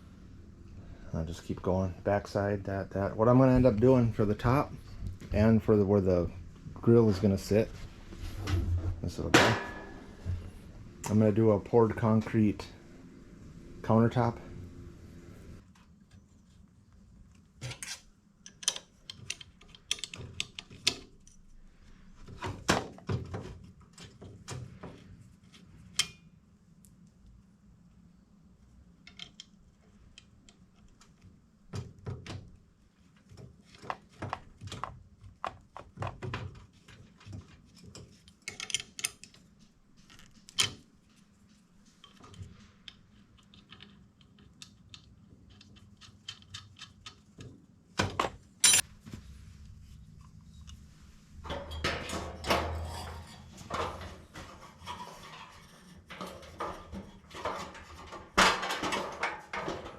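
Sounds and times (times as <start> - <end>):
metal clattering: 6.8 - 11.2, 51.4 - 59.9
tools and metal lath knocking: 9.3 - 11.2, 51.4 - 59.9.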